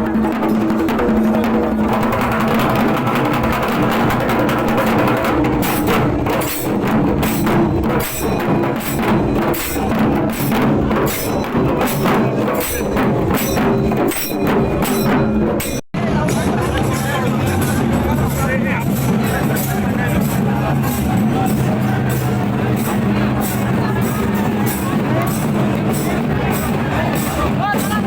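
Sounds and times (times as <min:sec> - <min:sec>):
drums and percussion beat: 0:00.0 - 0:28.0.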